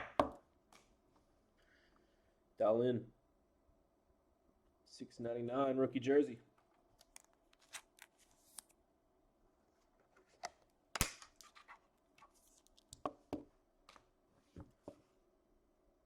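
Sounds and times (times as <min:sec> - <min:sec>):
trading cards shuffled: 0:07.0 - 0:08.8.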